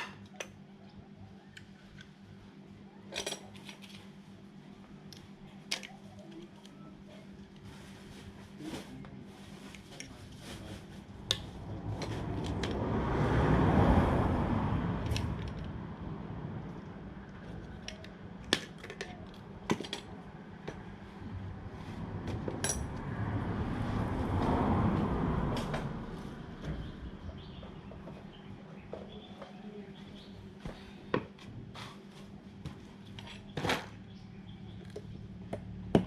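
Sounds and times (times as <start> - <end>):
metal parts and tools clinking: 22.6 - 23.0.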